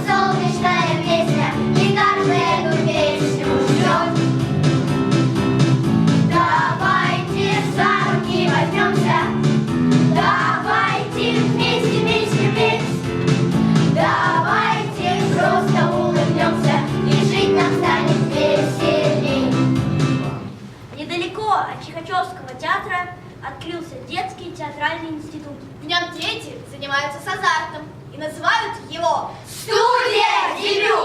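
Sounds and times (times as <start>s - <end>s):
children singing together: 0.0s - 4.4s, 6.3s - 13.2s, 13.8s - 19.7s, 29.6s - 31.0s
instrumental accompaniment: 0.0s - 20.8s.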